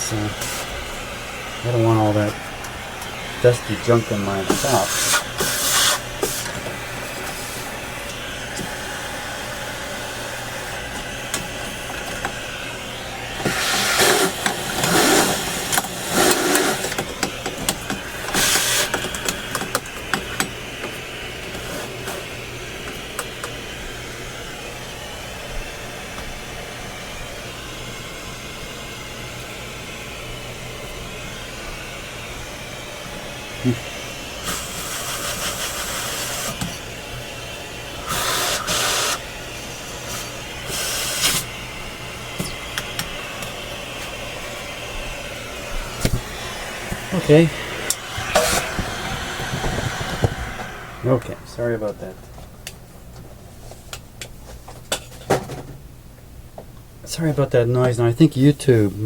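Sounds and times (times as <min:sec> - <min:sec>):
cleaning equipment motor humming: 0:00.0 - 0:52.6
rushes of air: 0:45.6 - 0:52.6.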